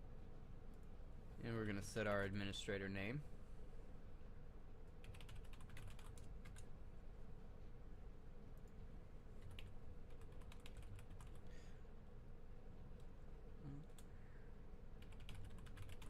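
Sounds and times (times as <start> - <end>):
faint steady hum: 0.0 - 16.0
keyboard typing: 5.0 - 6.7, 9.4 - 11.5, 15.0 - 16.0.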